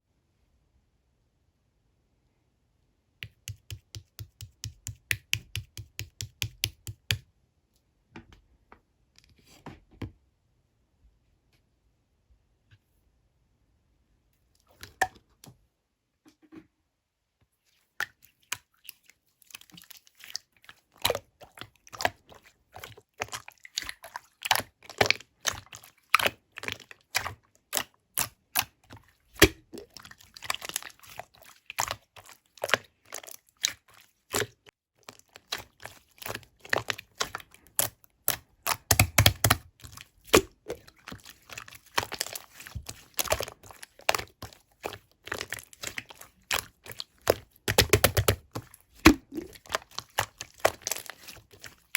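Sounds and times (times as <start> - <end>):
slime squished by hand: 18.3 - 51.9.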